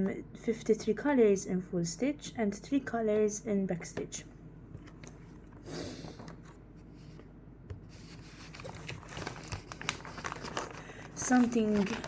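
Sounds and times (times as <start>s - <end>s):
packaging rustling and crinkling: 7.9s - 12.0s.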